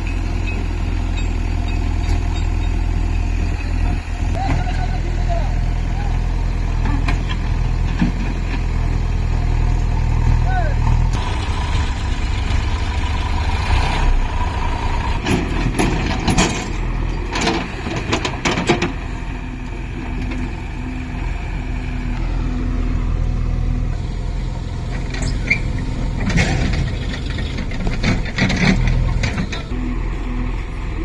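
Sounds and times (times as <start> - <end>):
diesel engine running: 0.0 - 31.0
metal clanks and knocks: 15.2 - 19.2, 24.9 - 29.8.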